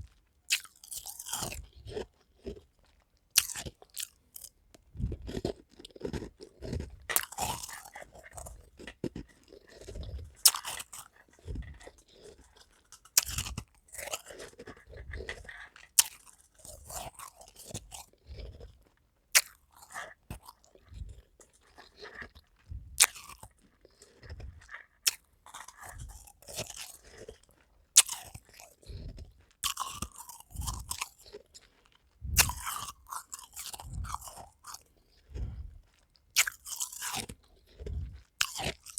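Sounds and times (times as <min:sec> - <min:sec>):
ice grinding chewing: 0:00.0 - 0:38.9
ice crunching bites: 0:13.0 - 0:14.8, 0:32.3 - 0:35.6.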